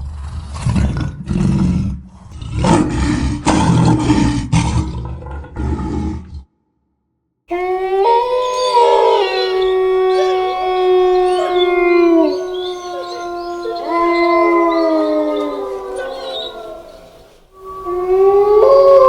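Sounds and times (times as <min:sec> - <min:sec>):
wolves howling in chorus: 0:07.5 - 0:19.0.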